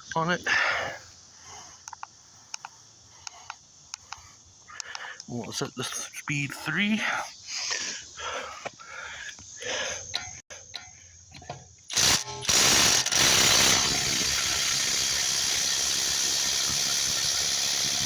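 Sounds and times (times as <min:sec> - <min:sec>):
light clicks: 0:01.8 - 0:05.5
impact driver hammering: 0:11.9 - 0:18.0.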